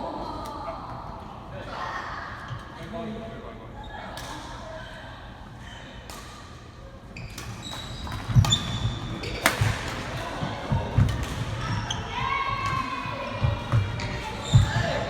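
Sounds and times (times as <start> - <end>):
sneakers squeaking: 6.2 - 15.0.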